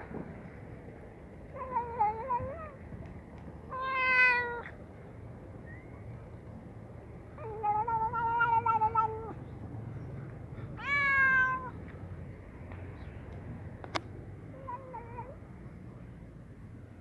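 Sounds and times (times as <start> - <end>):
cat meowing: 3.7 - 4.7, 7.4 - 9.4, 10.8 - 11.8.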